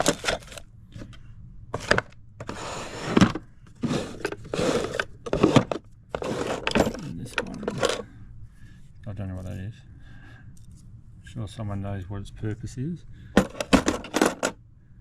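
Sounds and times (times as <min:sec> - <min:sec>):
rustling in wooden tool box: 0:00.0 - 0:01.2, 0:01.8 - 0:08.1, 0:13.4 - 0:14.5.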